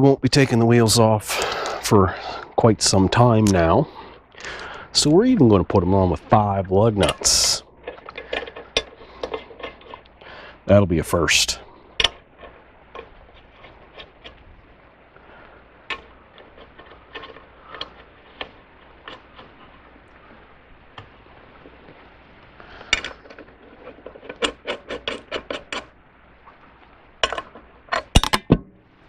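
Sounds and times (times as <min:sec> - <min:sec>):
metal lug nuts clinking: 0:07.0 - 0:10.2, 0:27.2 - 0:28.8.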